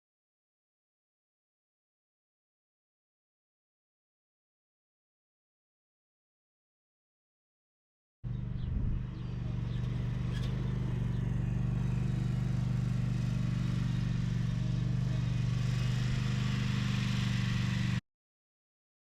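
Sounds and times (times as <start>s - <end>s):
lawn mower engine running: 8.3s - 18.0s.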